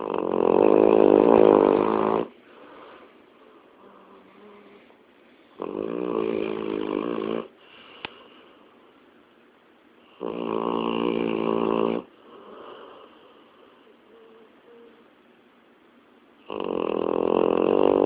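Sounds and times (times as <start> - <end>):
pitched snores: 0.0 - 2.4, 5.6 - 7.6, 10.1 - 13.1, 16.4 - 18.0
quiet breathing: 1.6 - 9.2, 12.0 - 15.3.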